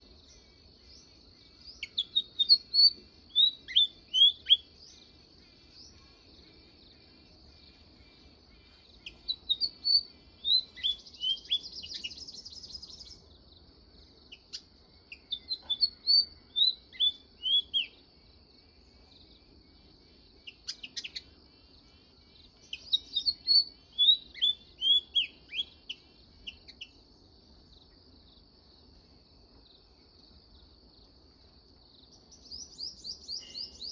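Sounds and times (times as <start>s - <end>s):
sparrow chirping: 8.7s - 13.2s, 20.5s - 21.4s, 22.4s - 27.0s, 32.2s - 33.9s.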